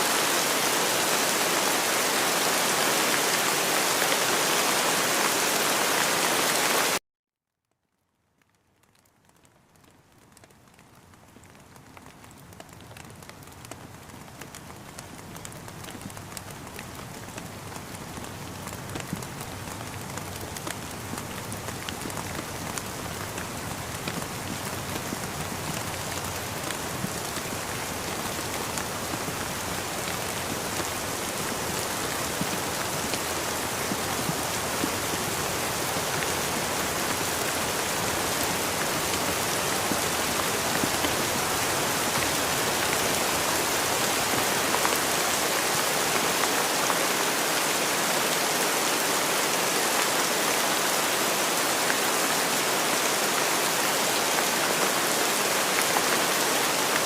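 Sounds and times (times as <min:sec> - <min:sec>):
steady rain falling: 0:00.0 - 0:07.0, 0:07.9 - 0:57.0
raindrops tapping on surfaces: 0:07.9 - 0:47.7.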